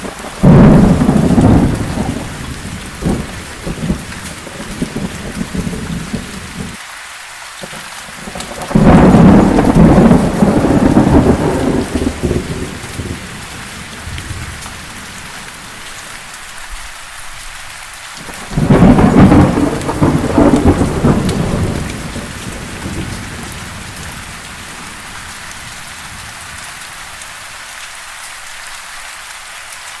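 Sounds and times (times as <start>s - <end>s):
heavy rain falling: 0.0s - 30.0s
thunder rolling: 0.3s - 6.8s, 8.2s - 15.3s, 18.3s - 26.4s.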